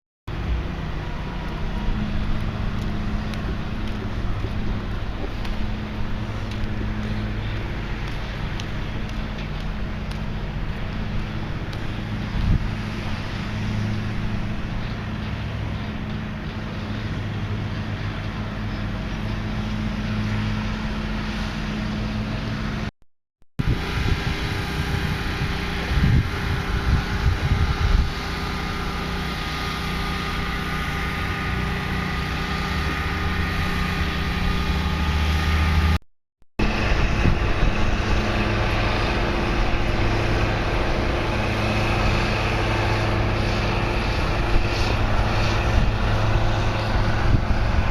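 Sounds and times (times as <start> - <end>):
mechanical engine hum: 0.3 - 22.9, 23.6 - 36.0, 36.6 - 47.9.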